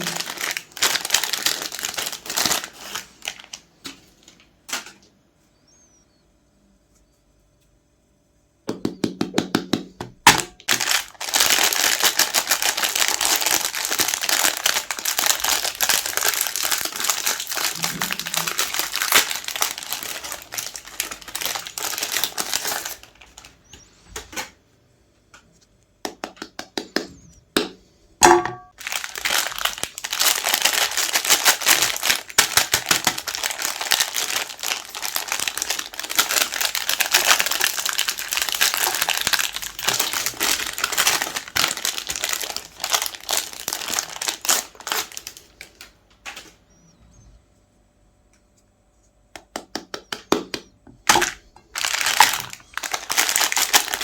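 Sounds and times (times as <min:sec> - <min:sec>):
ice cream bars crushed in grinder: 0:00.0 - 0:03.7, 0:10.3 - 0:23.5, 0:28.7 - 0:45.9, 0:51.0 - 0:54.0.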